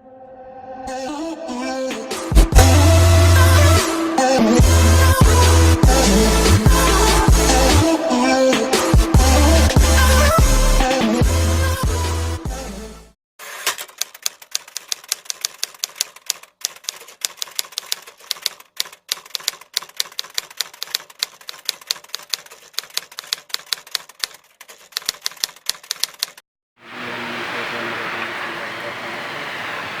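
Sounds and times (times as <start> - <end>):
typewriter keystroke clicks: 13.7 - 26.4.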